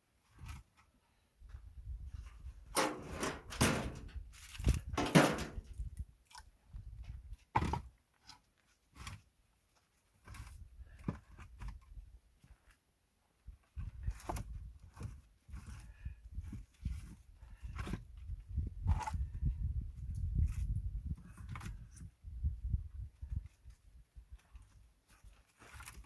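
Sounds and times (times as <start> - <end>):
logs knocking and scraping: 2.8 - 5.9.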